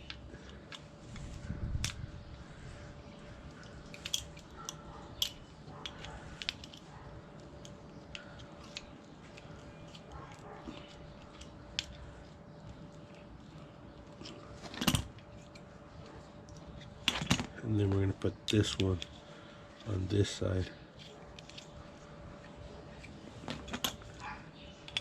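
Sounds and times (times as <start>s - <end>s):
small clicks of fittings handled: 3.5s - 4.5s, 5.2s - 6.8s.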